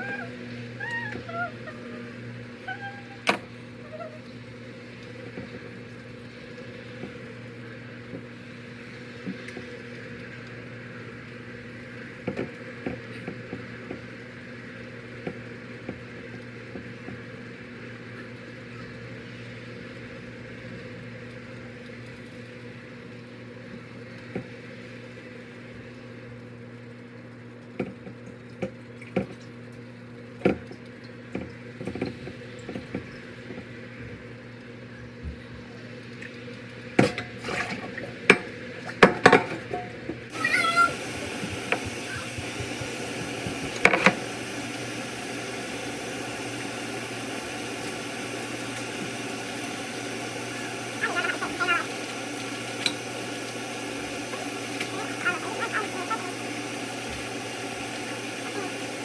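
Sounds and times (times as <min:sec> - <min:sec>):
water hissing: 0:00.0 - 0:04.2, 0:40.3 - 0:59.0.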